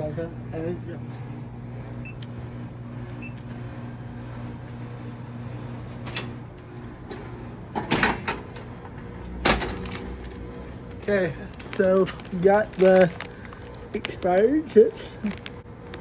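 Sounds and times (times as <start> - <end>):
vending machine humming: 0.0 - 16.0
bag of chips dropping: 11.0 - 15.6.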